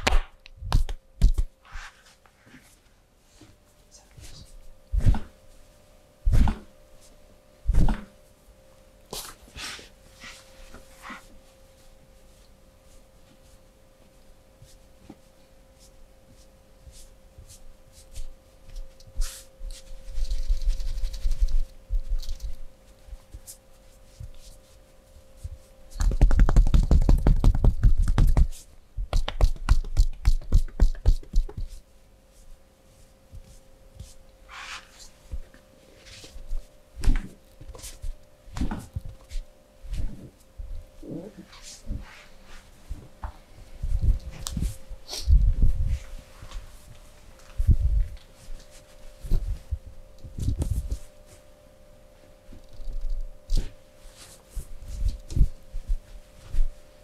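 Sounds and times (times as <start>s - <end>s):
hands slapping and tapping: 0.0s - 1.5s, 25.9s - 31.8s
faint hum: 0.0s - 57.0s
hands rubbing skin: 15.8s - 22.6s, 26.0s - 32.5s.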